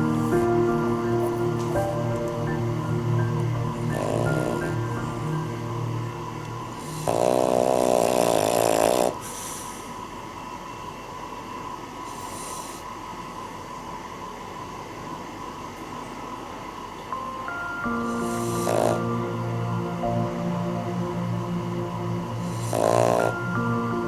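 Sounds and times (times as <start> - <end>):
dog snoring: 3.8 - 5.6, 6.8 - 10.0, 12.1 - 12.9, 18.1 - 19.4, 22.4 - 23.8.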